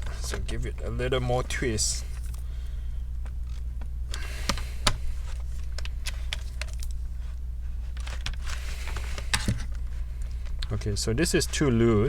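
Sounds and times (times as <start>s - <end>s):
low electrical hum: 0.0s - 12.0s.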